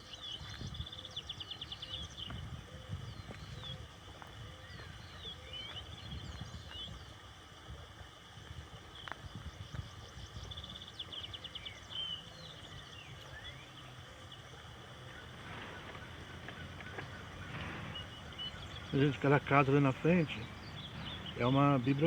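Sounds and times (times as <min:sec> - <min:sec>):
birds singing and calling: 0:00.0 - 0:03.9, 0:04.6 - 0:07.1, 0:09.0 - 0:22.0
low rumble: 0:14.5 - 0:22.0.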